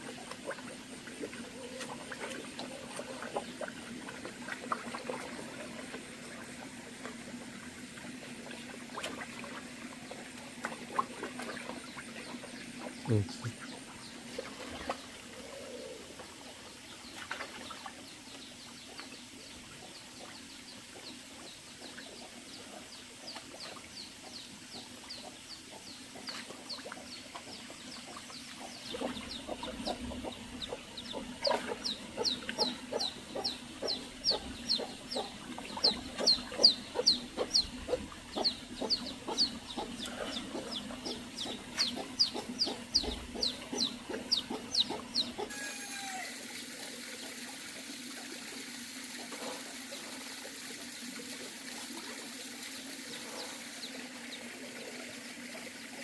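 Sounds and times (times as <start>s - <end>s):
chickens clucking and peeping: 17.9s - 49.8s.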